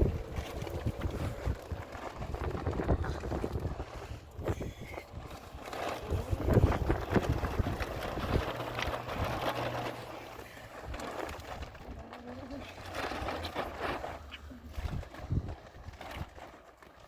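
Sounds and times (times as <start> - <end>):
wind buffeting microphone: 0.0 - 10.0, 14.7 - 16.4.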